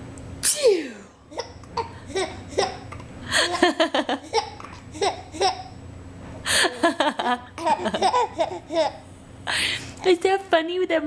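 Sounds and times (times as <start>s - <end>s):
woman sneezing: 0.4s - 1.1s
baby laughing: 1.3s - 5.8s, 6.7s - 9.1s.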